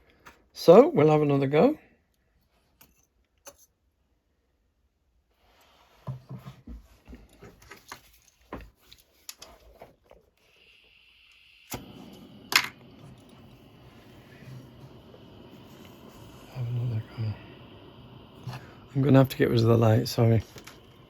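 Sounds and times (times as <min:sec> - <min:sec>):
gas torch hissing: 0:10.4 - 0:21.0.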